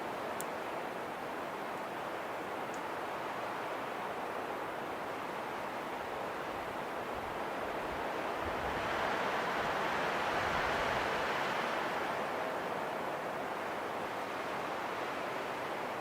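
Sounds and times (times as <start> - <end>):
steady rushing wind: 3.0 - 16.0.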